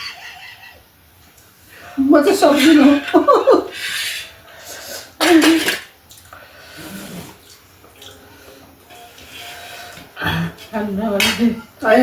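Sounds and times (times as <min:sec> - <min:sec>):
person hissing breath: 0:03.7 - 0:05.2, 0:06.4 - 0:07.4.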